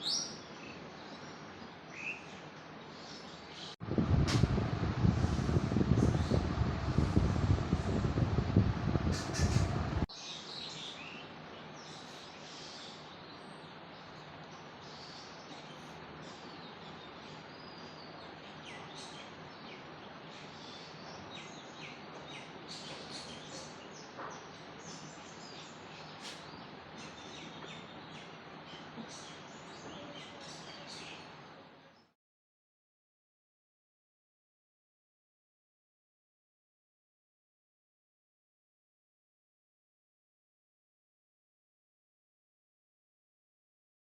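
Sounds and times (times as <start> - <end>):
small birds chirping: 4.5 - 32.1.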